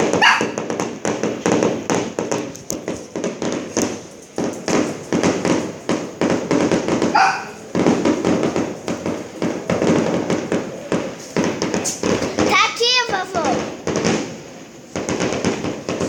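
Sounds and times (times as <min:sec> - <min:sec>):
firework high whine: 0:00.0 - 0:16.0
fireworks crackling bangs: 0:00.0 - 0:16.0.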